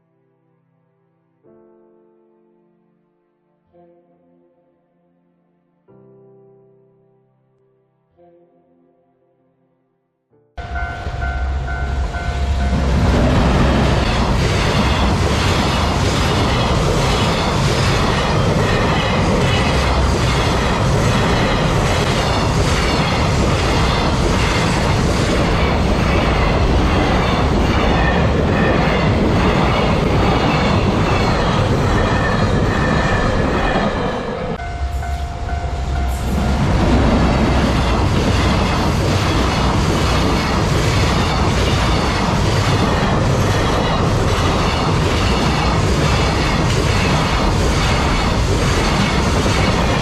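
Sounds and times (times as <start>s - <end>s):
level crossing warning bell: 10.6s - 13.0s, 34.6s - 36.7s.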